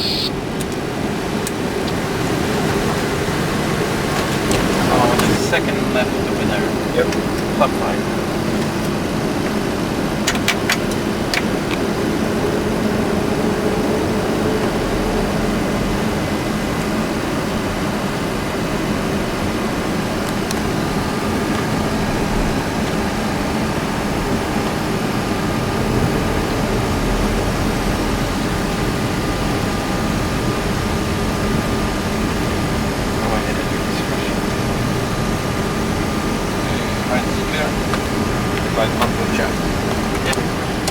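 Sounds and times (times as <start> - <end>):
faint steady tone: 0.0 - 0.3
air conditioning blowing: 0.0 - 40.9
aircraft cockpit hum: 0.0 - 40.9.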